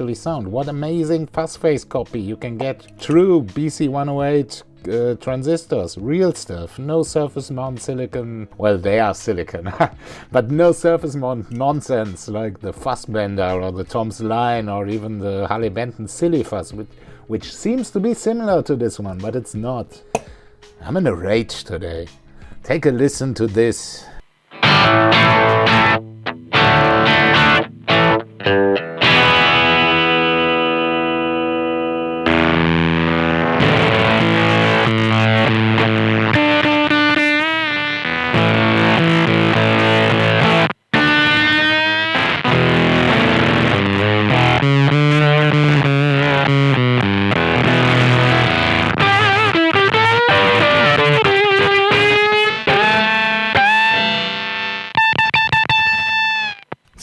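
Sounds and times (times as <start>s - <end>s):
man talking: 0.0s - 20.0s, 20.8s - 24.3s
distorted electric guitar chords: 24.3s - 56.9s.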